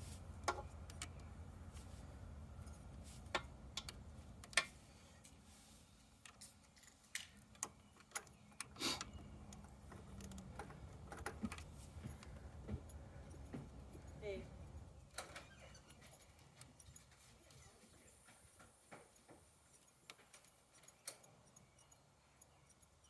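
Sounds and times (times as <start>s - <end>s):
socket wrench clicking and tapping: 7.2s - 14.1s, 19.8s - 23.0s.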